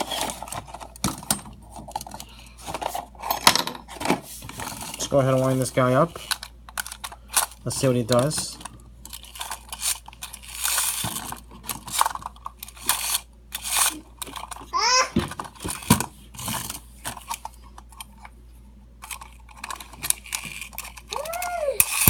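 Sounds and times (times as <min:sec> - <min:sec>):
short high vocal sounds: 0:21.2 - 0:21.9.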